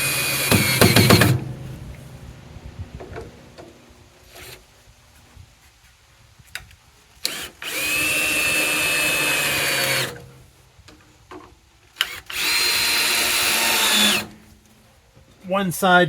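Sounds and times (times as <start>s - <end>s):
screw gun motor running: 7.2s - 10.2s, 12.0s - 14.3s.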